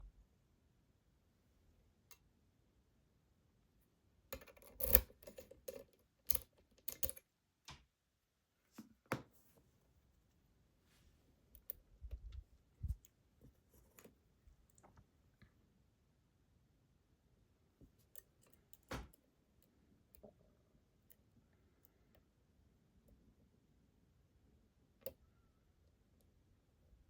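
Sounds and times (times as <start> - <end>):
lock picking clicks and taps: 4.4 - 7.2.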